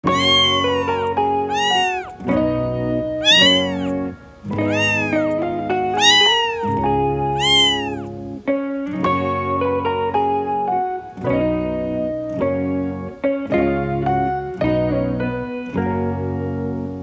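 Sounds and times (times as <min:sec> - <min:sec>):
kitten meowing: 0:00.0 - 0:02.2, 0:03.2 - 0:04.0, 0:04.7 - 0:05.4, 0:06.0 - 0:06.8, 0:07.4 - 0:08.1.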